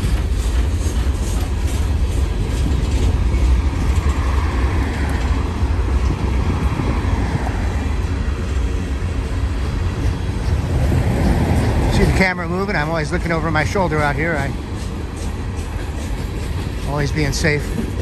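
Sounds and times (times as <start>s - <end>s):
vehicle rumble: 9.9s - 14.5s.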